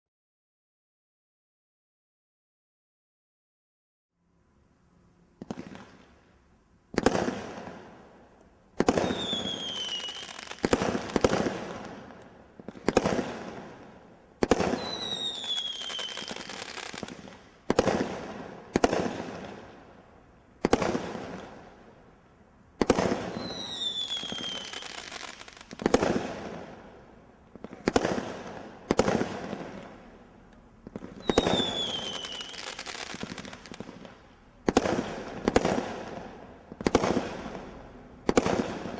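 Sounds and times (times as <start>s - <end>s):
firework bangs: 6.9s - 8.0s, 8.8s - 19.8s, 20.6s - 21.8s, 22.8s - 38.9s
falling firework whistle: 8.9s - 11.3s, 14.6s - 17.3s, 23.0s - 25.8s, 31.1s - 34.0s.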